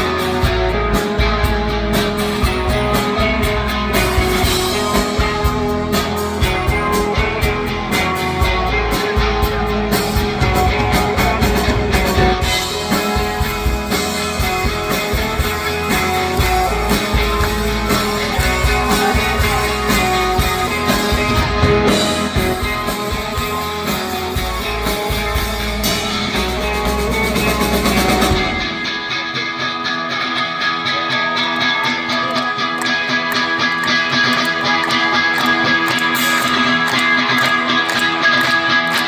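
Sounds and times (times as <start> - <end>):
drum kit: 0.0 - 29.1
bass guitar: 0.0 - 39.0
electric guitars: 0.0 - 39.0.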